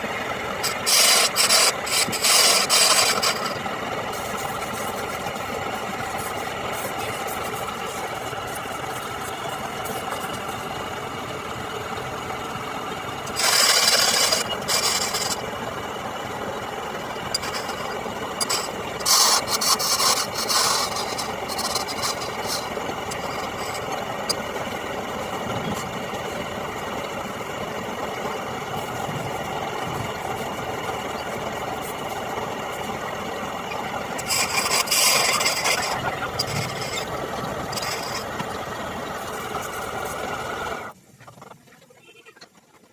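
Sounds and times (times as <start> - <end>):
lathe motor hum: 0.0 - 41.0
chisel rasping on spinning wood: 0.6 - 11.0, 13.2 - 15.5, 16.8 - 25.2, 33.6 - 38.6.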